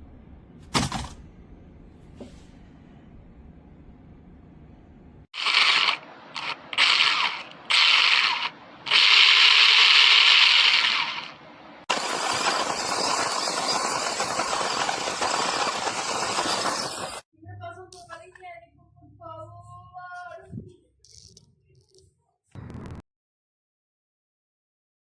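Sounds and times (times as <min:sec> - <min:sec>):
rc truck motor whirring: 0:05.4 - 0:17.2.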